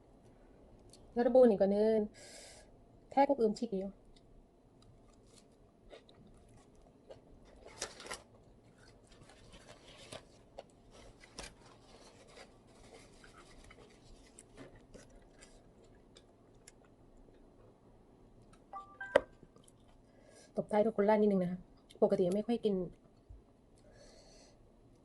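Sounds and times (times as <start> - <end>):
faint chewing and crunching: 0.2 - 1.2, 4.0 - 18.7, 19.3 - 20.6, 21.6 - 24.1.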